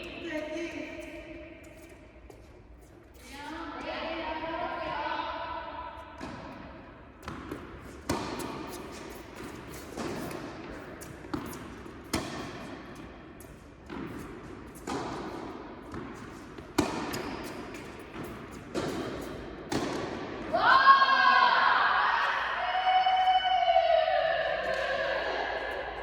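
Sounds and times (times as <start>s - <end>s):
racket hitting tennis ball: 6.2s - 20.6s
tennis ball bouncing on court: 6.2s - 20.6s.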